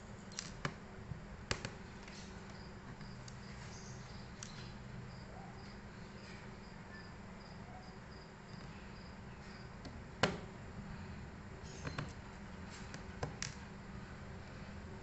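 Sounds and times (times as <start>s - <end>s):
low steady hum: 0.0s - 15.0s
clicks and taps from laptop parts: 1.5s - 2.2s, 12.9s - 13.6s
cricket chirping: 2.5s - 9.8s.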